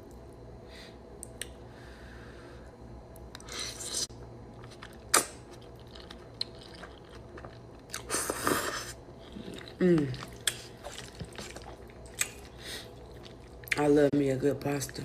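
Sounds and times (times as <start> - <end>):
chewing and mouth noises: 3.4 - 13.9.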